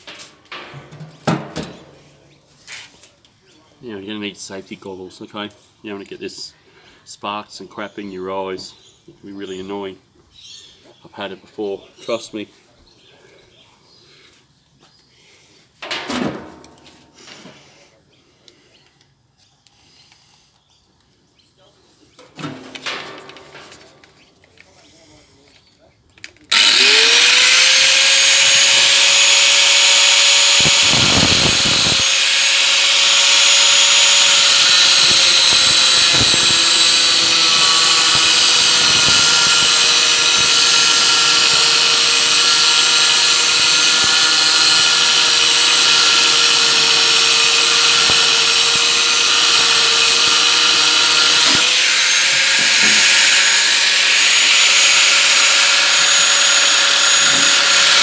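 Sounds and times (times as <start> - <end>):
angle grinder cutting metal: 26.5 - 58.0.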